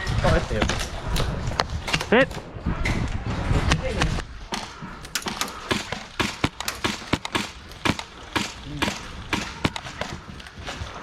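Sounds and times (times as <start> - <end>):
airsoft gunfire: 4.5 - 10.3.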